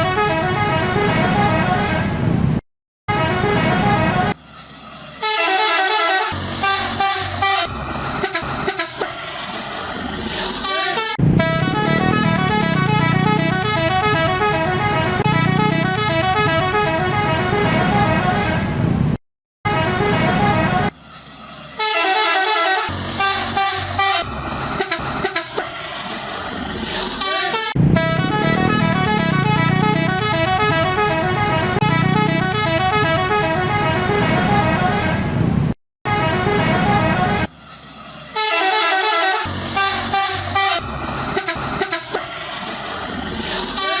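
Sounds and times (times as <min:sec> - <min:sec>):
multi-tone musical bus horn: 0:00.0 - 0:02.2, 0:03.1 - 0:04.4, 0:05.1 - 0:09.2, 0:10.6 - 0:18.6, 0:19.7 - 0:21.0, 0:21.8 - 0:25.9, 0:27.2 - 0:35.2, 0:36.1 - 0:37.5, 0:38.3 - 0:42.5, 0:43.7 - 0:44.0
low vehicle rumble: 0:11.2 - 0:19.0, 0:27.8 - 0:34.9.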